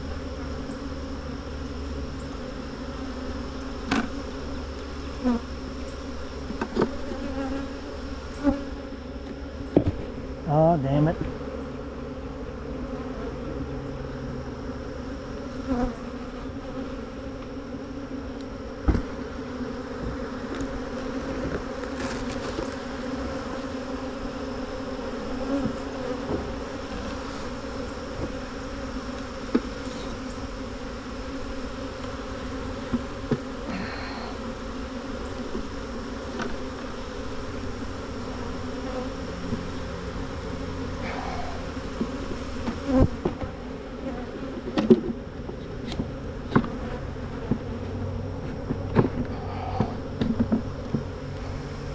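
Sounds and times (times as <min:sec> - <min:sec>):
bees buzzing: 0:00.0 - 0:51.9.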